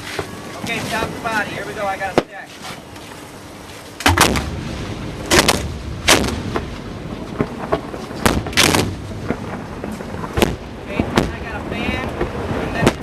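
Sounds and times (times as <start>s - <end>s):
low rumble: 3.3s - 13.0s
firework bangs: 4.0s - 13.0s.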